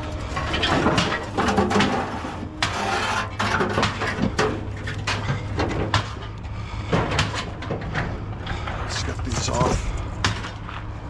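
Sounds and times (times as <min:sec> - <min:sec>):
scrap metal clanking: 0:00.0 - 0:07.9
steady low hum: 0:04.3 - 0:11.0.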